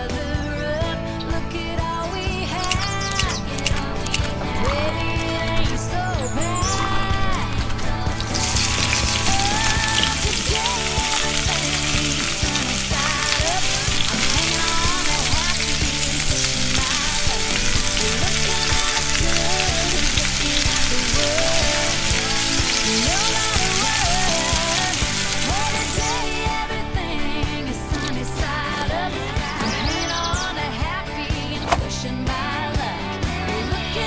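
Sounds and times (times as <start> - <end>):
background music: 0.0 - 34.0
egg sizzling in a frying pan: 8.2 - 26.6.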